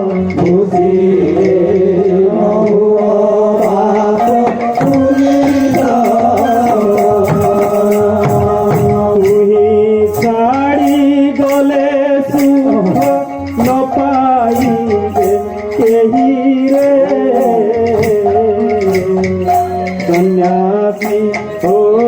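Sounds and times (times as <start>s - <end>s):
jingling percussion: 0.0s - 22.0s
wavering held melody: 3.5s - 22.0s.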